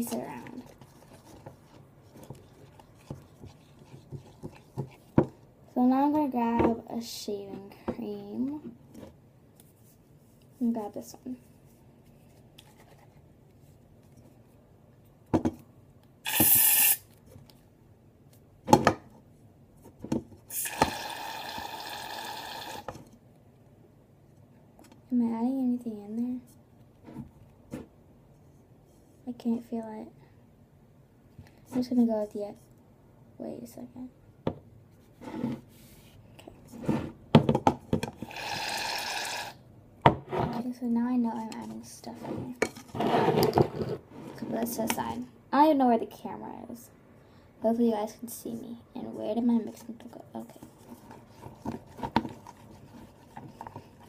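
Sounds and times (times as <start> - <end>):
knocks and handling sounds: 0.0 - 5.6, 6.5 - 10.6, 11.4 - 16.2, 17.1 - 20.5, 26.5 - 29.2, 34.4 - 38.2, 40.0 - 40.7, 41.4 - 45.1, 50.4 - 54.0
aerosol can spraying hiss: 16.3 - 17.0.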